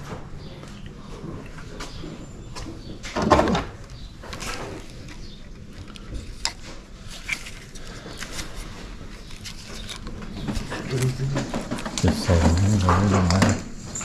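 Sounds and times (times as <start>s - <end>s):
clicks and knocks of objects handled: 5.8s - 14.0s.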